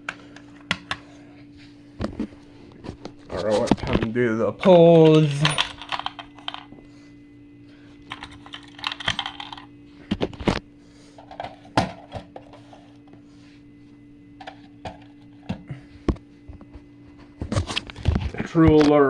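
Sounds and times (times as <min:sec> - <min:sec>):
faint steady hum: 0:00.0 - 0:19.0
plastic and metal devices clattering: 0:05.1 - 0:06.7, 0:08.1 - 0:09.7.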